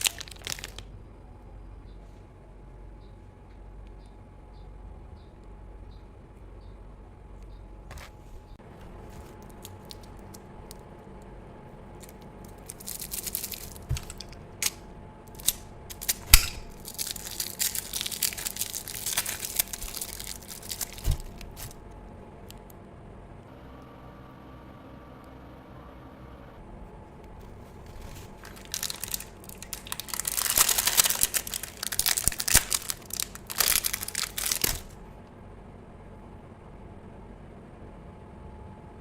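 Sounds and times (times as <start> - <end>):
crunching and chewing crispy food: 0.0 - 1.0, 8.7 - 21.8, 27.4 - 35.0.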